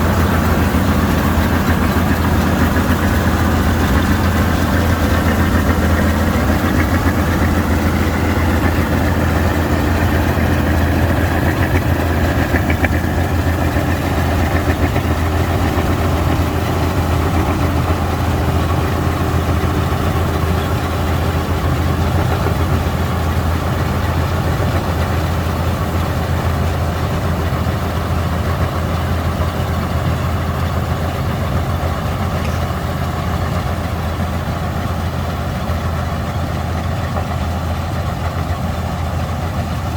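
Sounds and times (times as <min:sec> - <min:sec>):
combine harvester engine running: 0:00.0 - 0:39.9.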